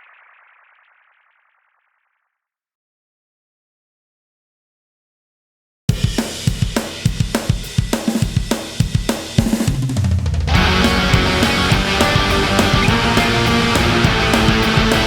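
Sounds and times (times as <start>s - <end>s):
rock drums beat: 5.9s - 15.0s
heavy electric guitars: 10.4s - 15.0s.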